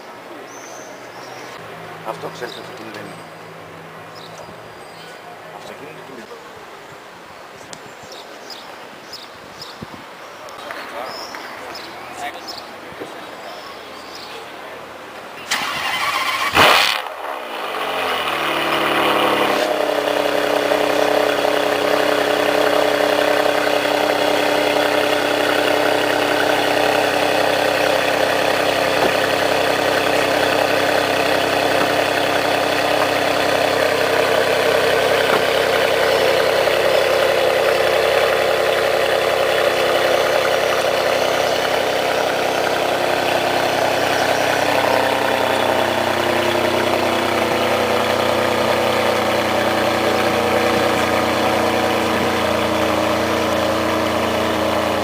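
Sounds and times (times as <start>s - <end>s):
car engine idling: 1.2s - 6.7s, 14.4s - 55.0s.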